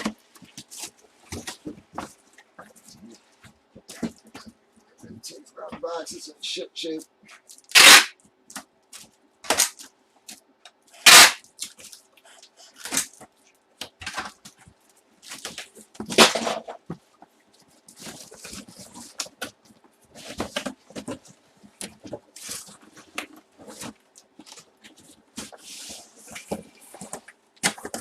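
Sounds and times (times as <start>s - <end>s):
packaging ripping: 7.6s - 8.1s, 11.0s - 11.4s
packaging rustling and crinkling: 8.5s - 28.0s.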